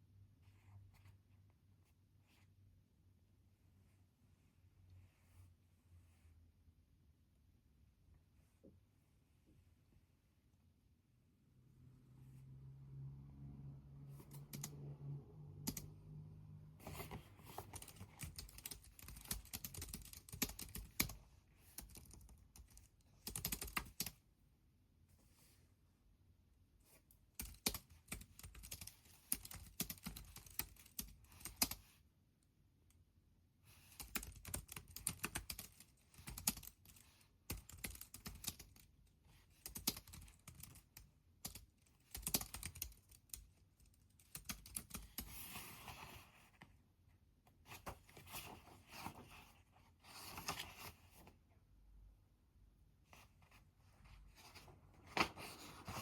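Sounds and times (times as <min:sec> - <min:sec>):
computer keyboard typing: 0:14.2 - 0:14.9, 0:15.6 - 0:16.0, 0:17.6 - 0:24.2, 0:27.4 - 0:31.8, 0:33.9 - 0:38.9, 0:39.6 - 0:45.3.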